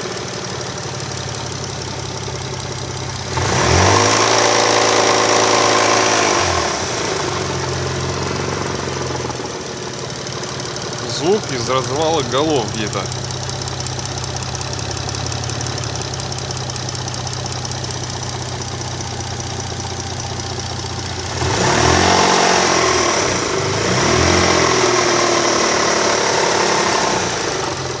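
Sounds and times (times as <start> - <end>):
engine idling with rhythmic knock: 0.0 - 3.6, 6.4 - 21.7
engine revving: 3.0 - 9.8, 10.7 - 13.4, 20.8 - 28.0.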